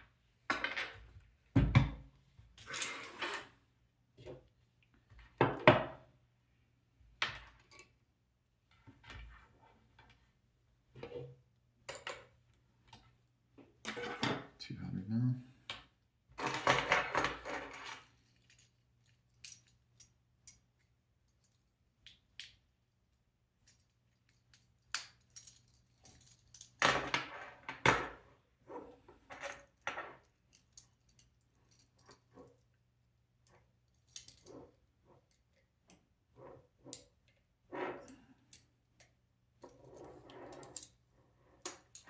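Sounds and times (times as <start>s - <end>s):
small parts clicking and clinking: 16.4s - 22.8s, 23.5s - 27.2s, 29.4s - 32.8s, 38.0s - 41.0s.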